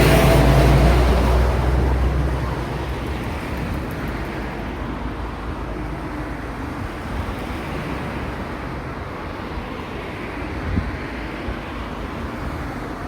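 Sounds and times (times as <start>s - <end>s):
highway traffic rumble: 0.0s - 13.0s.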